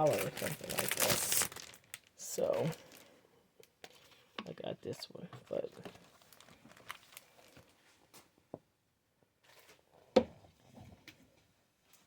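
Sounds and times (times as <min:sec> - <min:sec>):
paper and plastic rustling: 0:00.0 - 0:03.2, 0:05.4 - 0:08.3.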